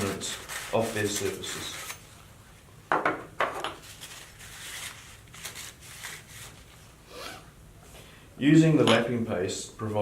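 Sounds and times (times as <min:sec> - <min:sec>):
rubbing and scraping on metal parts: 0:00.0 - 0:02.1.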